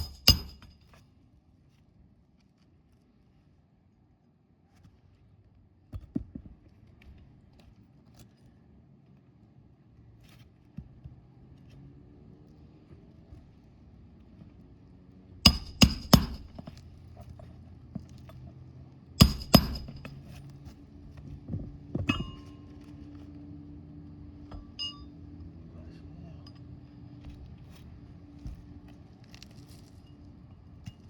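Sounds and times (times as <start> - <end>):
hammer striking metal: 0.0 - 0.7, 15.5 - 16.7, 19.2 - 20.2, 22.1 - 22.6.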